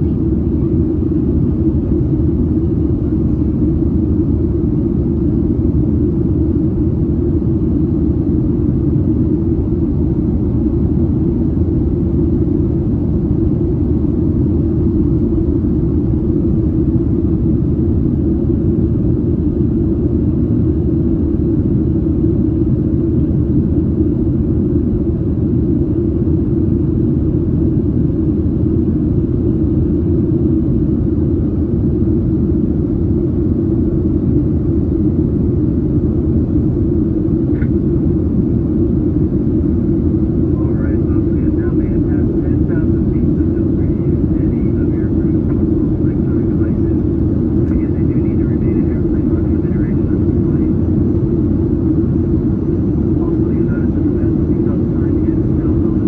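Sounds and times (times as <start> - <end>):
jet engine cabin rumble: 0.0 - 56.0.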